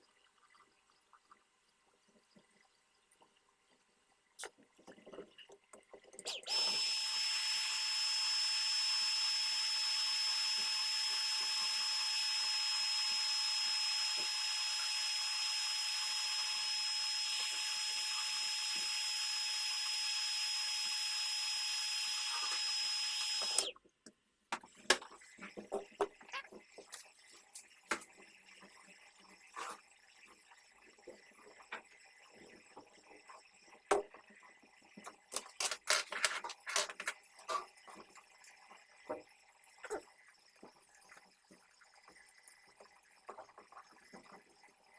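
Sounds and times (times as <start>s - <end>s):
power tool motor whining: 6.3s - 23.7s.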